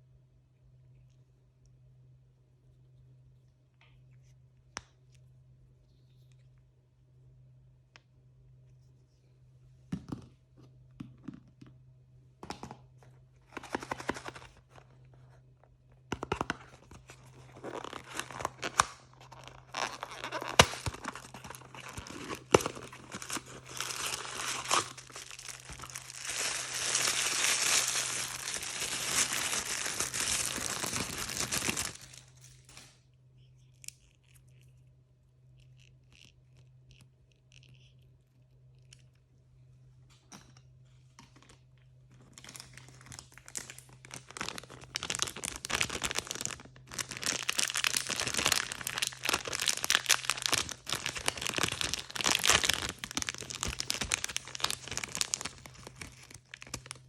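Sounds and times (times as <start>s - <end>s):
low steady hum: 0.0s - 57.0s
packaging crinkling and tearing: 13.4s - 15.3s, 16.2s - 32.8s, 42.2s - 57.0s.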